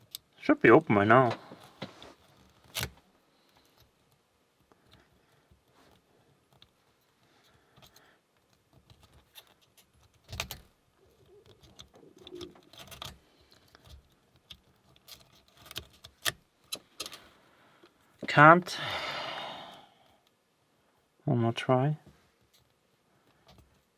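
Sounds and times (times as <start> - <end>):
lock pick scraping and clicking: 2.3 - 3.0, 11.5 - 17.2
padlock rattling: 11.6 - 17.2.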